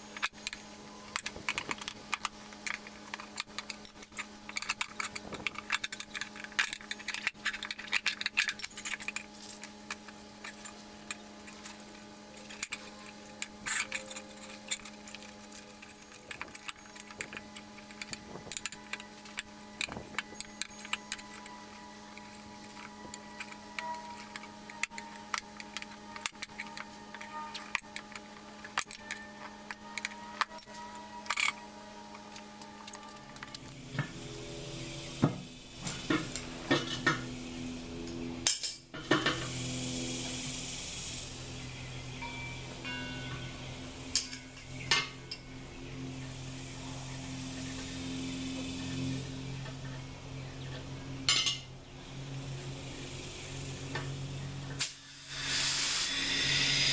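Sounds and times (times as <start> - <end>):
small metallic clicks and clinks: 0.0 - 33.8
steady low hum: 0.0 - 56.9.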